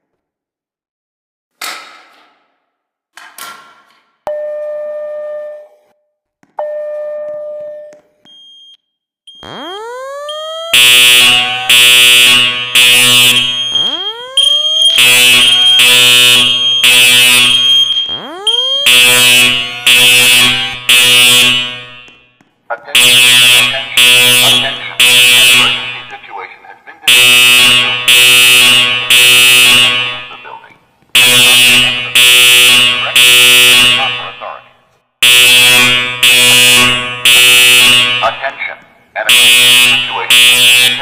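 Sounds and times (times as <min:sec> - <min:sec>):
high steady beep: 0:06.6 - 0:22.1, 0:23.0 - 0:26.3, 0:27.1 - 0:30.4
long beeps: 0:06.6 - 0:22.1, 0:23.0 - 0:26.3, 0:27.1 - 0:30.5
buzzy alarm horns: 0:09.3 - 0:26.4, 0:27.0 - 0:41.0.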